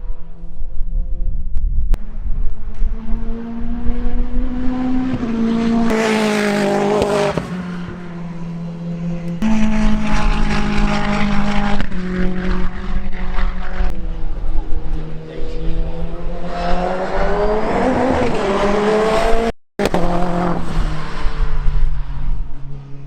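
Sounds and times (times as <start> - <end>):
race car engine running hard: 2.0 - 18.3.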